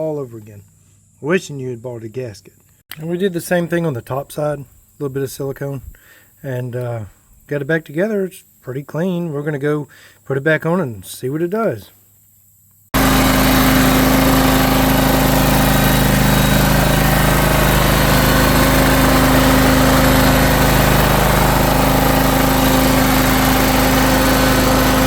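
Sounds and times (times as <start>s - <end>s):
lawn tractor engine idling: 13.0s - 25.0s.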